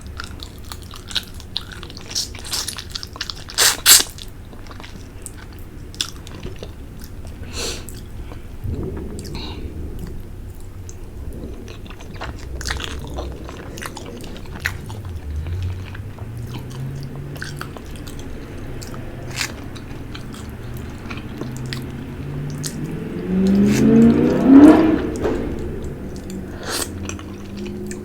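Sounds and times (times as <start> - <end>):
person chewing and smacking: 0.0 - 8.4, 11.4 - 25.3, 26.2 - 28.0
voiced sound rising in pitch: 21.6 - 27.8.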